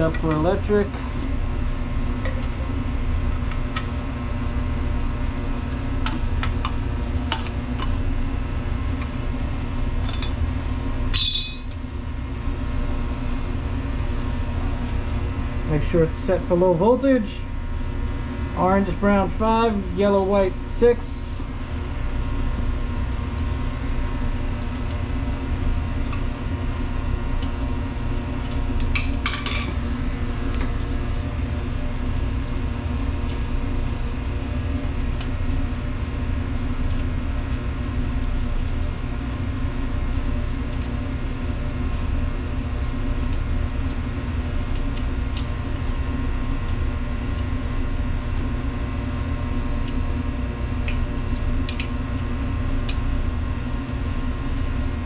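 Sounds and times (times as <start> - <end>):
machinery hum: 0.0 - 55.0
light metallic clink: 11.2 - 11.6.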